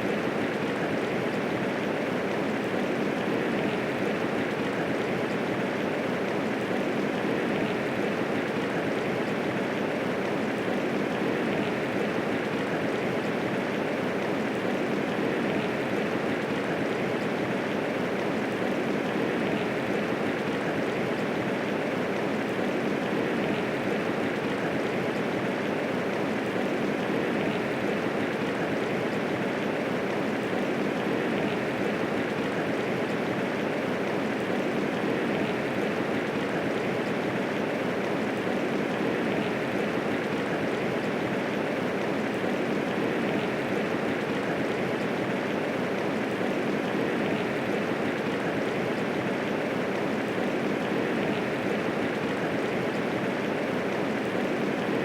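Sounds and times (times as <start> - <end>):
steady rainfall: 0.0 - 55.0.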